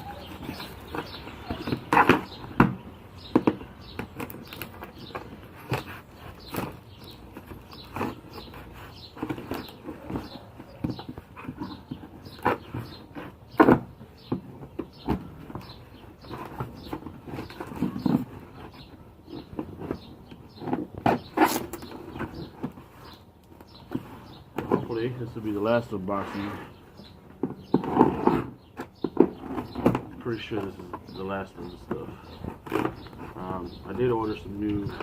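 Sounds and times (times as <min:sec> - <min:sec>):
cardboard boxes crinkling: 0:00.0 - 0:25.2
cardboard scraping: 0:00.0 - 0:35.0.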